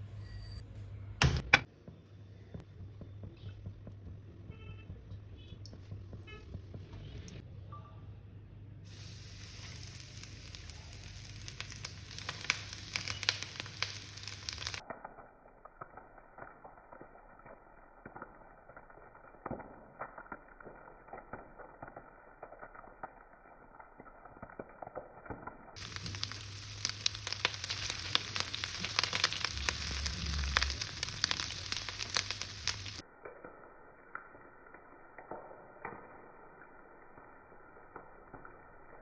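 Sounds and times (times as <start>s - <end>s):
low hum: 0.7s - 7.6s
oil crackling and popping: 1.3s - 7.4s, 8.9s - 39.0s
prawns sizzling in hot oil: 8.9s - 33.1s.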